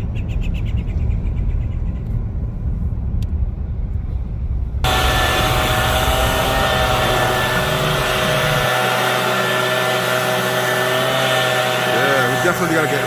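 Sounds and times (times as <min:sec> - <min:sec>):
leaf blower whining: 0:04.8 - 0:13.0.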